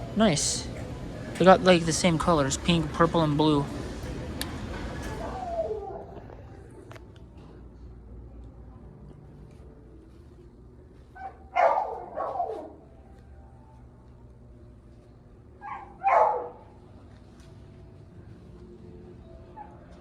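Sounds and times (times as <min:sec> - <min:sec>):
dog barking: 0:11.2 - 0:12.8, 0:15.6 - 0:16.8.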